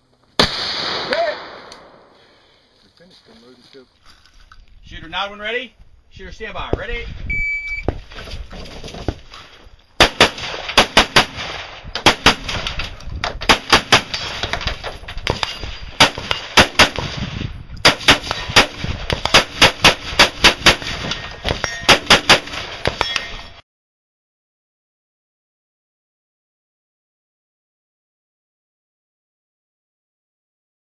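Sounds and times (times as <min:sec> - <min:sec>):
shot timer beep: 0:07.3 - 0:07.9
rifle firing rapid shots: 0:10.0 - 0:12.8, 0:13.4 - 0:14.7, 0:15.4 - 0:17.2, 0:17.8 - 0:21.2, 0:21.9 - 0:23.0.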